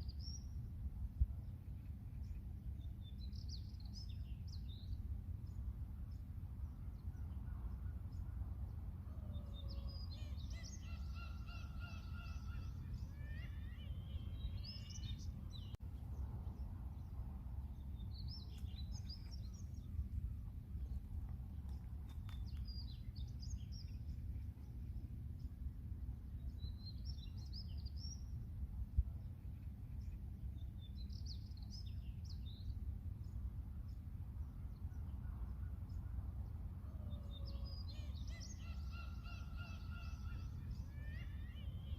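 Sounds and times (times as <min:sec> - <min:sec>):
steady low rumble: 0:10.1 - 0:37.4
seagulls calling: 0:10.2 - 0:14.4, 0:38.0 - 0:41.9.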